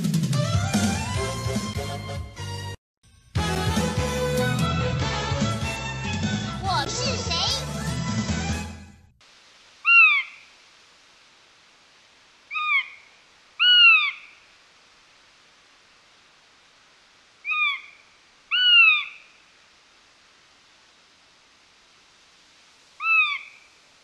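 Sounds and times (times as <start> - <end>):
faint background hiss: 9.0 - 24.0
bird calling: 9.8 - 10.5, 12.5 - 14.5, 17.4 - 19.5, 23.0 - 23.8.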